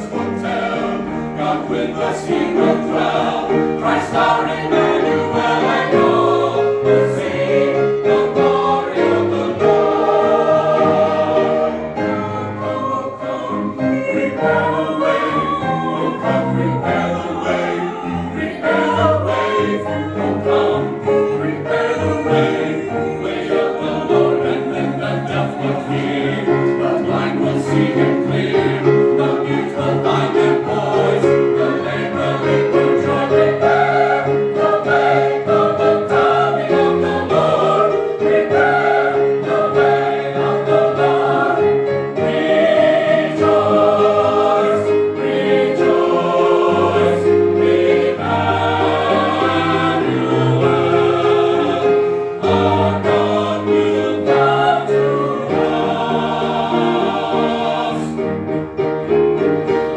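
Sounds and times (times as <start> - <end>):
choir singing: 0.0 - 59.9.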